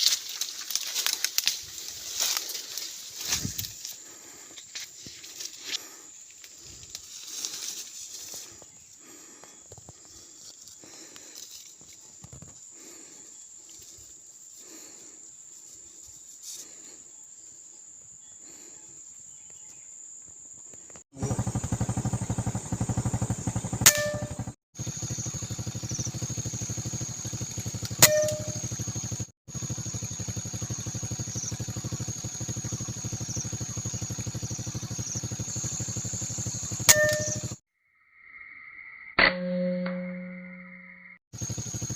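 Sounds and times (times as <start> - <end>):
insects droning: 0.0 - 39.1, 40.4 - 41.9
high whine: 21.2 - 37.6
small engine running: 21.2 - 37.6, 41.3 - 41.9
sharp crack with ringing: 23.8 - 24.6, 26.4 - 29.3, 35.3 - 37.6, 39.2 - 40.6.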